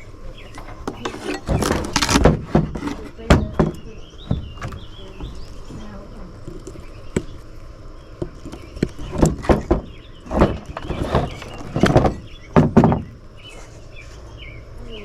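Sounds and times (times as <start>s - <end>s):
radio casing clunks and scraping: 0.0s - 14.3s
birds chirping faintly: 0.0s - 15.0s.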